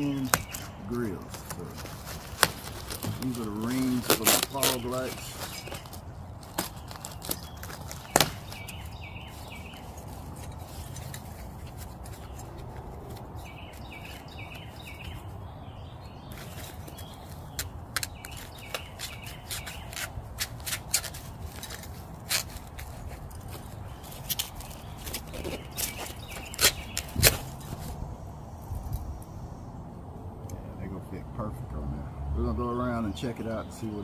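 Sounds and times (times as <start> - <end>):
bird chirping: 0.0 - 31.6.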